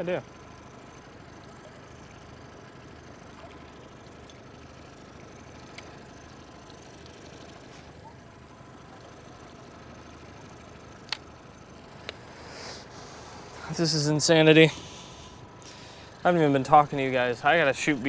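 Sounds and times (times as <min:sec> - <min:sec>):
low mechanical hum: 0:00.0 - 0:18.0
small click: 0:11.0 - 0:11.3.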